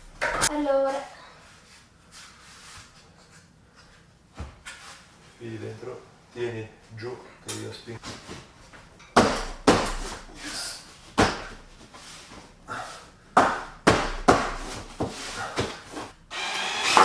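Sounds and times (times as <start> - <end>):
hammer blows on wooden boards: 13.4 - 15.8.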